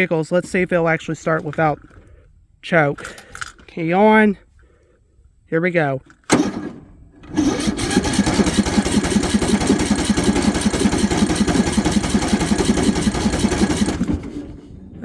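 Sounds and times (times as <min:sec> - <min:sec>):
starter cranking engine: 0:00.0 - 0:02.2, 0:06.1 - 0:14.8.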